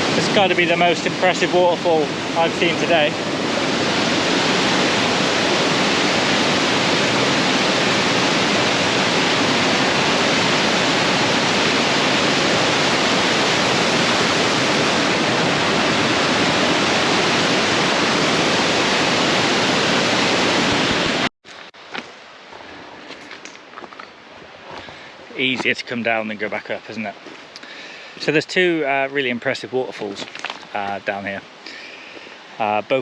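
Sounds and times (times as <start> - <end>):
waterfall rushing: 0.0 - 21.3.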